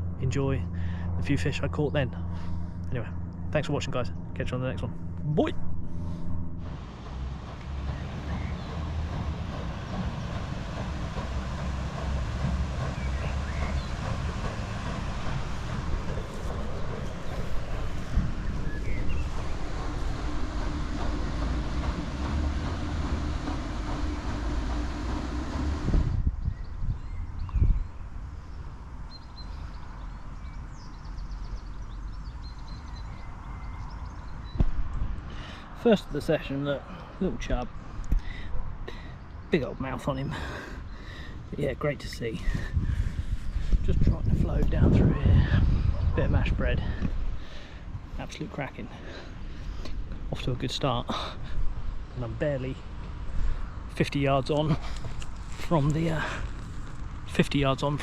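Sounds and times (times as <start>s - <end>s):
outdoor rushing noise: 0.0s - 27.5s
wind buffeting microphone: 5.4s - 30.1s, 40.4s - 58.0s
small birds chirping faintly: 6.9s - 25.7s.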